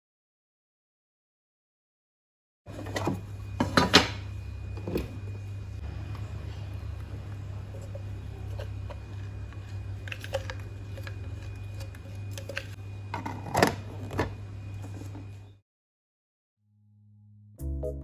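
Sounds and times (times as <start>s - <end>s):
steady low hum: 2.7s - 15.6s.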